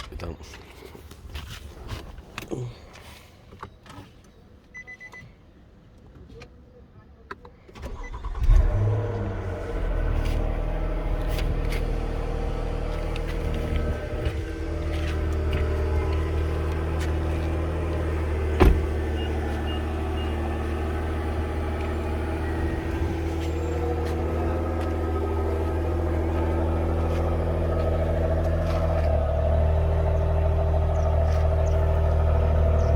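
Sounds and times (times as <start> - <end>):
car engine idling: 7.9 - 32.9.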